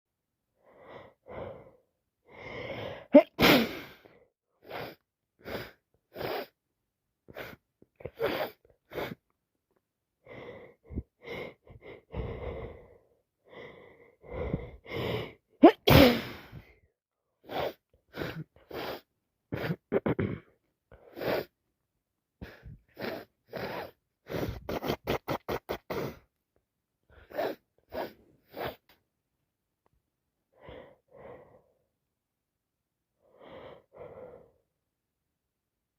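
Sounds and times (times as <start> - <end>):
gasping in-breaths: 0.6 - 6.6, 10.2 - 16.8, 22.4 - 24.8, 33.2 - 34.7
woman sneezing: 3.2 - 4.0, 15.6 - 16.6.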